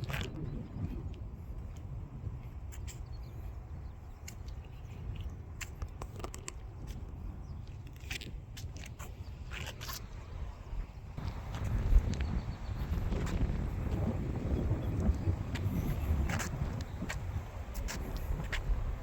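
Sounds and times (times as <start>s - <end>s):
wind rumbling on microphone: 0.0s - 19.0s
crunching and scraping clicks: 4.2s - 7.1s, 7.7s - 10.2s.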